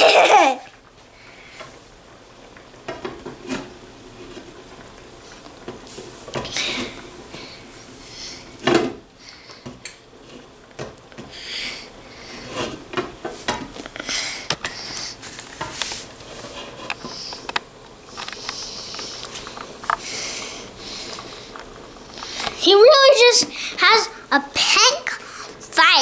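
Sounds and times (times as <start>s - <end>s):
short rustling or hissing: 14.1s - 17.5s.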